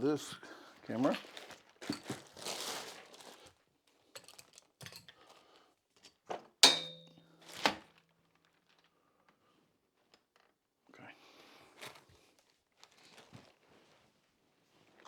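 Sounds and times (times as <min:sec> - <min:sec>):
sharp metal clank: 0:06.6 - 0:07.2.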